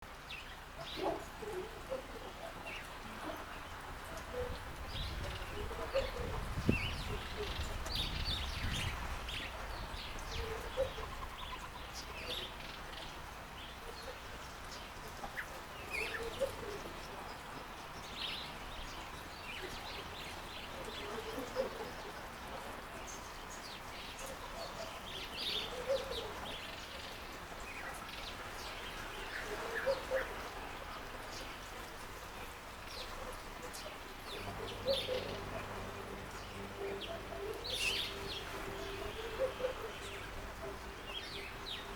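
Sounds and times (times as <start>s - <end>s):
birds chirping: 0.1s - 41.9s
fountain trickling: 0.1s - 41.9s
lower bird calls: 34.3s - 41.9s.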